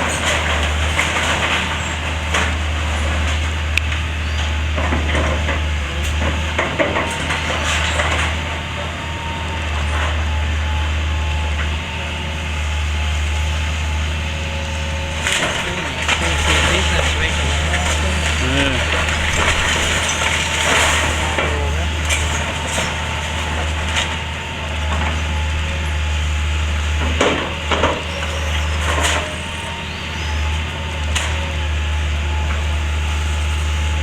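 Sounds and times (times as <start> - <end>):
excavator diesel engine running: 0.0 - 34.0
wood and plaster breaking: 15.0 - 24.3.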